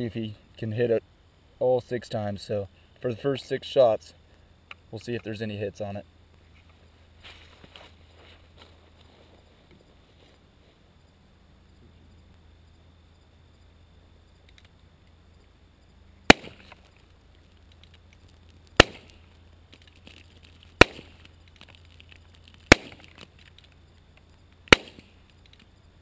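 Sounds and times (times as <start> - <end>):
revolver gunshots: 16.3 - 16.8, 18.8 - 19.2, 20.8 - 21.2, 22.7 - 23.1, 24.7 - 25.2.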